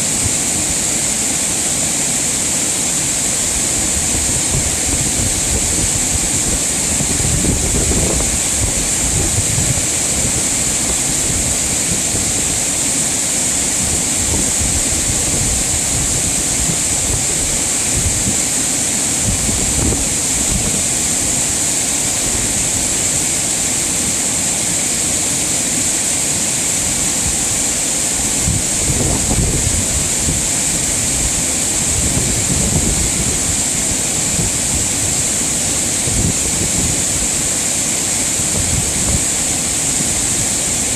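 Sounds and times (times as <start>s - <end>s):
water rushing over rocks: 0.0s - 40.9s.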